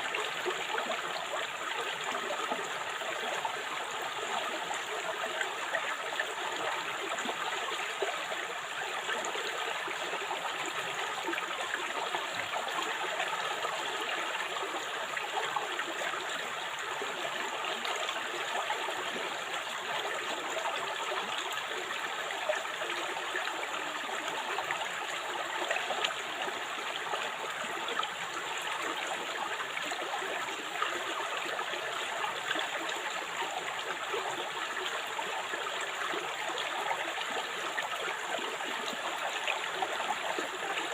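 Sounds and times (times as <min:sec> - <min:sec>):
river water babbling over stones: 0:00.0 - 0:40.9.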